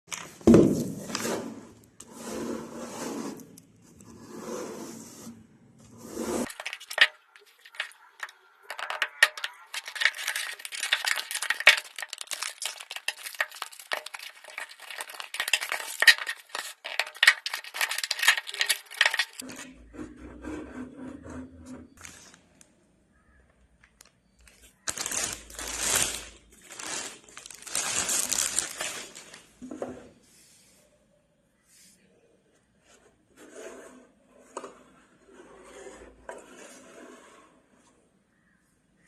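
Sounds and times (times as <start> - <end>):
handling crackles and rustles: 0.1 - 1.2, 6.4 - 19.8, 22.0 - 30.2.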